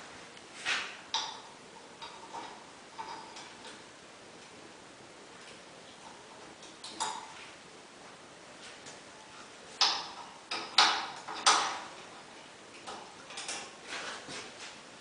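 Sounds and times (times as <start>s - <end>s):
metal clanks and clicks: 1.1s - 3.8s, 6.6s - 7.4s, 9.8s - 12.1s, 12.7s - 13.8s.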